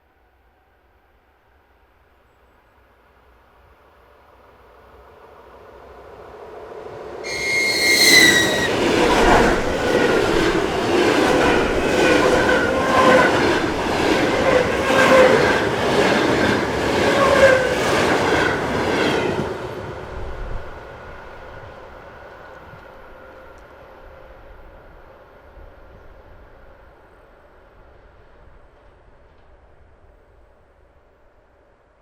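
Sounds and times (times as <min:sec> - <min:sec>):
high tone falling in pitch: 0:07.3 - 0:09.0.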